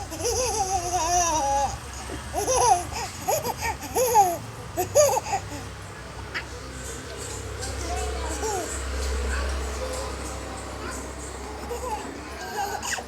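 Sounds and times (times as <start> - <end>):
baby babbling and laughing: 0.0 - 5.7, 8.2 - 8.8, 11.5 - 13.0.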